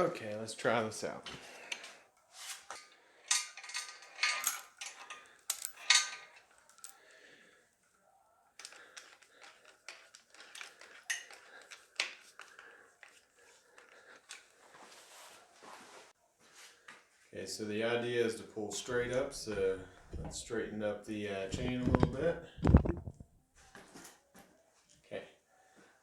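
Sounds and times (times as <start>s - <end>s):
steel chain clinking and rattling: 3.2s - 7.0s.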